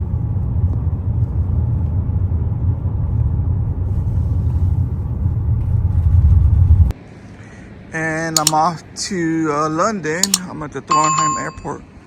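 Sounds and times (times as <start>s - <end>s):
loud low rumble: 0.1s - 6.9s.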